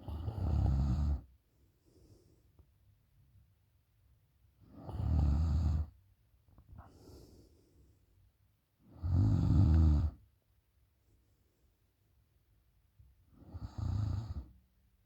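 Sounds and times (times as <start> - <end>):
woman snoring: 0.0 - 1.2, 9.0 - 10.2
soft breath: 1.6 - 2.7, 6.7 - 8.2.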